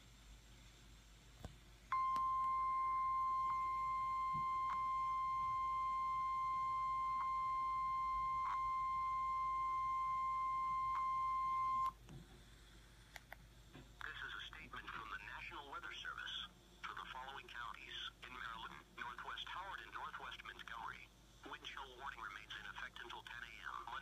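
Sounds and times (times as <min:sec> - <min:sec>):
high alarm beep: 0:01.9 - 0:11.9
faint radio static: 0:13.7 - 0:24.0.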